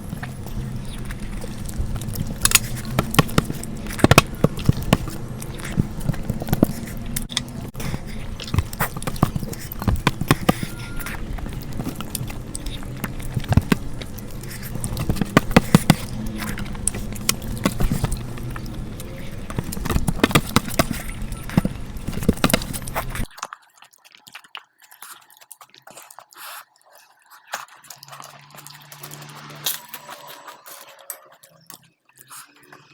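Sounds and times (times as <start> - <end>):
steady background noise: 0.0 - 23.3
crisp chewing with clicks and smacks: 0.0 - 32.9.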